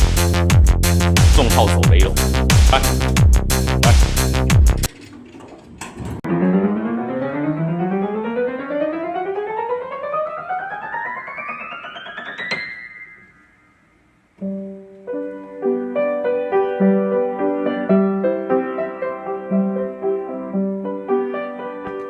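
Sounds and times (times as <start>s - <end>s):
piano chords and melody: 0.0s - 22.0s
piano rising run: 1.2s - 16.2s.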